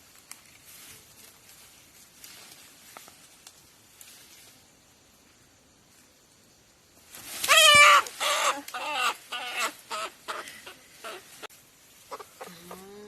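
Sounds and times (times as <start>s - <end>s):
pheasant squawking: 7.5s - 11.3s, 12.1s - 12.8s.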